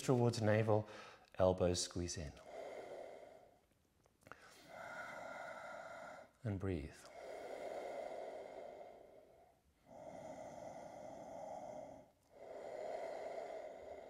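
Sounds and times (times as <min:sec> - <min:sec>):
person breathing slowly: 0:00.8 - 0:01.3, 0:02.3 - 0:14.0.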